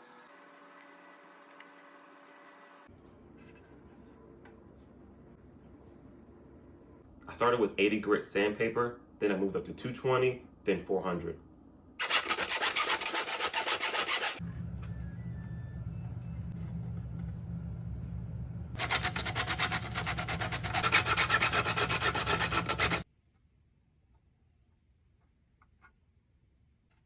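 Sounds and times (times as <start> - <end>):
sandpaper rubbing on plastic: 12.0 - 14.4, 18.8 - 23.0
steady low hum: 14.4 - 23.1.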